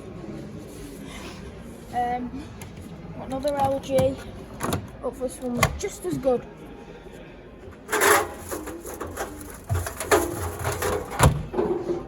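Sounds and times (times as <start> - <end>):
washing machine door clunking: 7.9 - 11.7.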